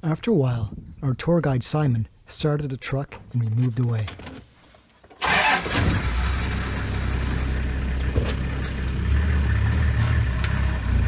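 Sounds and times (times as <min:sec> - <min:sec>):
truck engine humming: 0:05.2 - 0:11.0.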